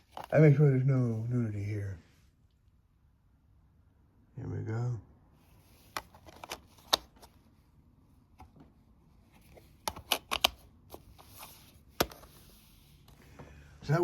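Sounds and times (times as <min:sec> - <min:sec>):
plastic disc cases clicking: 0:05.9 - 0:07.3, 0:09.5 - 0:11.3.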